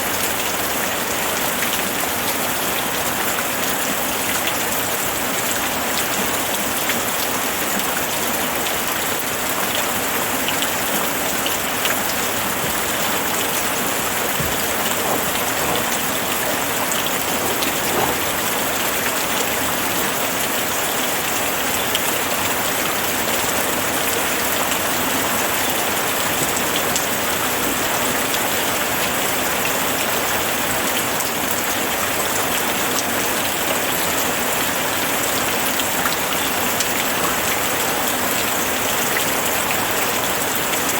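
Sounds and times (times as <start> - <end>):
rain pattering: 0.0 - 40.9
raindrops ticking: 11.2 - 19.5.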